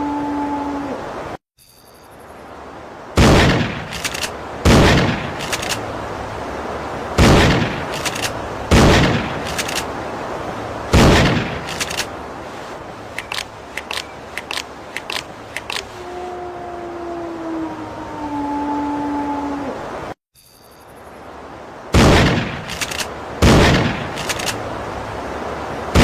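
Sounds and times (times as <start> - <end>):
short clicks: 13.2 - 15.9, 24.2 - 24.6.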